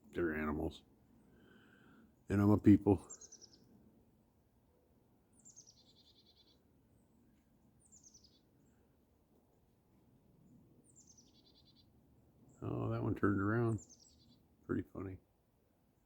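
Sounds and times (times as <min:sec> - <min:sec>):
songbird singing faintly: 0:00.0 - 0:16.0.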